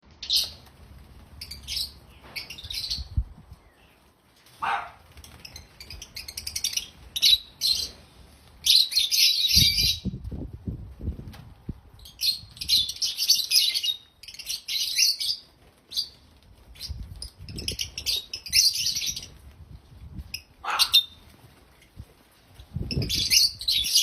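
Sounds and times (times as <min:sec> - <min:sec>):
lovebirds chirping: 0:01.4 - 0:10.2, 0:12.0 - 0:19.5, 0:20.1 - 0:21.3.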